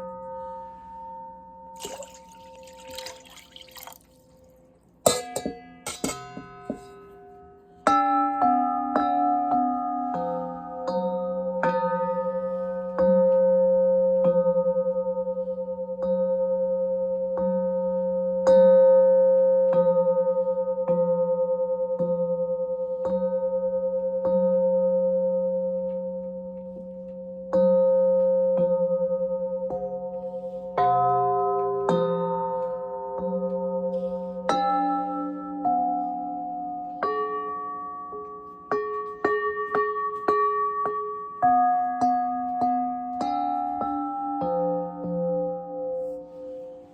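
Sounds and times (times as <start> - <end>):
metal bowls ringing: 0.0 - 4.2.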